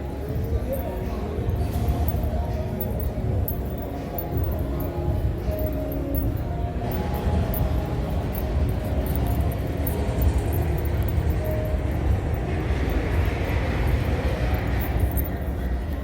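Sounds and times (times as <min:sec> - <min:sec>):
faint distant hum: 0:00.0 - 0:16.0
low rumbling hall noise: 0:00.0 - 0:16.0.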